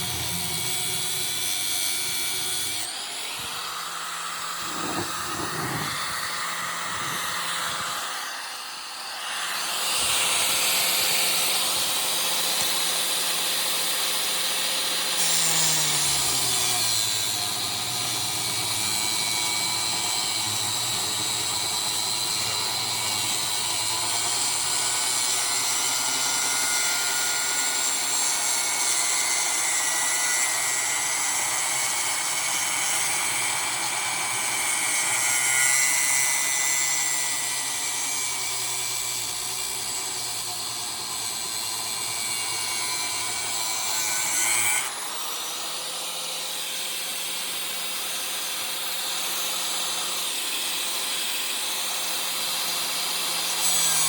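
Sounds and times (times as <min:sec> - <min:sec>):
angle grinder cutting metal: 0:00.0 - 0:54.0.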